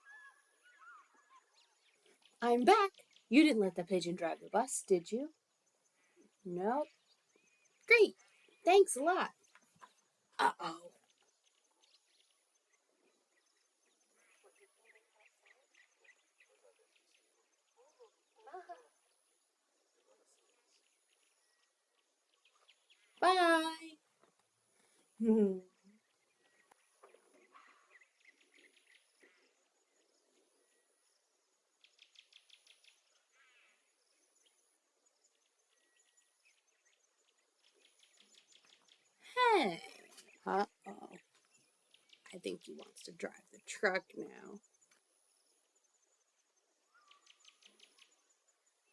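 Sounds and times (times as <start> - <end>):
faint high bird chirps: 0.0 - 24.0, 45.6 - 48.9.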